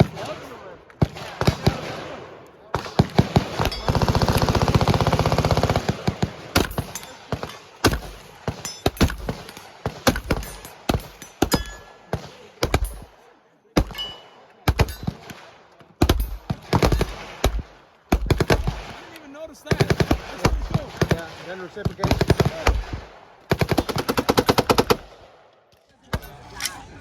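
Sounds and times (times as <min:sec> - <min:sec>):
automatic gunfire burst: 0:02.8 - 0:08.2, 0:16.0 - 0:25.2
single gunshots: 0:13.8 - 0:24.3.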